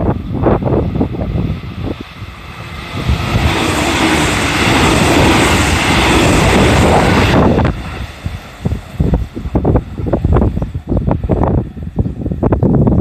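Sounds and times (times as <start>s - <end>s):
train rushing past: 0.0s - 13.0s.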